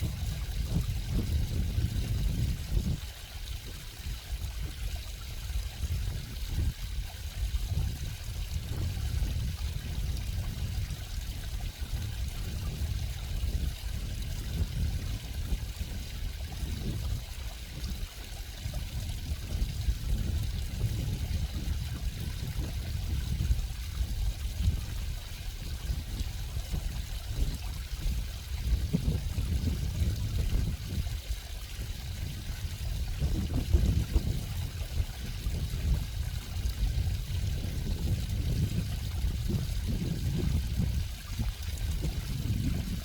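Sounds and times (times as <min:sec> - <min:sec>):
stream water trickling: 0:00.0 - 0:43.0.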